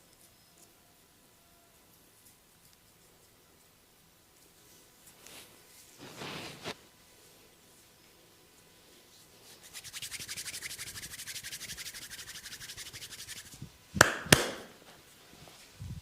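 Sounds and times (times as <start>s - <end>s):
fingers scratching scalp: 9.5s - 13.6s
sharp smacks: 14.0s - 14.8s.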